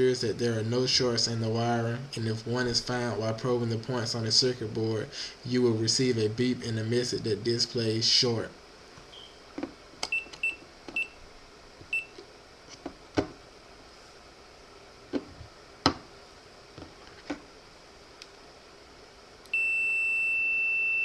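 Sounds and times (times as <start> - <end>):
long steady multimeter beep: 9.1 - 9.4, 10.1 - 11.2, 11.9 - 12.2, 19.5 - 21.0
multimeter beeps: 9.1 - 9.4, 10.0 - 11.2, 11.9 - 12.2, 19.5 - 21.0.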